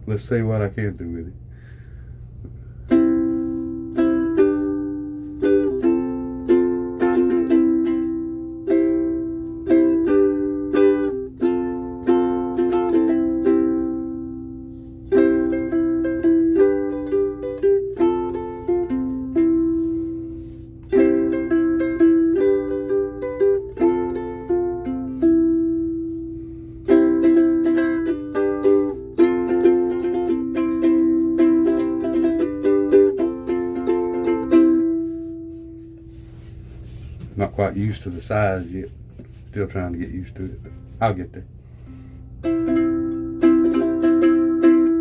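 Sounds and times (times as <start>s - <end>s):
ukulele strummed and picked: 2.8s - 41.2s, 42.4s - 45.0s.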